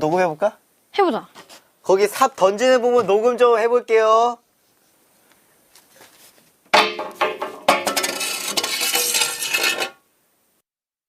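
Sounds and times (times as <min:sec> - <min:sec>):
metal clanging on ground: 0:06.7 - 0:10.0
metallic ringing: 0:06.8 - 0:10.0.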